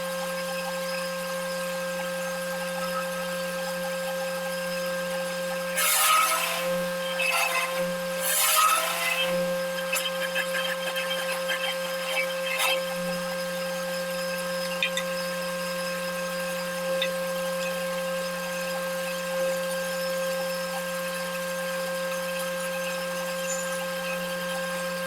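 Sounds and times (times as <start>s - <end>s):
motor hum and whine: 0.0s - 25.0s
cutter rasping into wood: 5.6s - 14.0s
light scraping: 5.7s - 13.3s.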